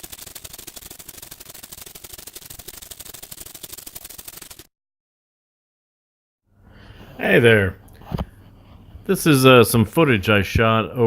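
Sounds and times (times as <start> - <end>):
rapid clatter of sharp clicks: 0.0 - 4.7.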